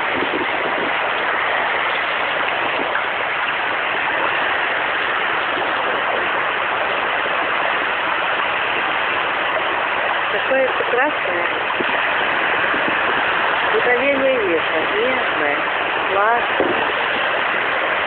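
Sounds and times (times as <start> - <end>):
sea waves washing in: 0.0 - 18.0.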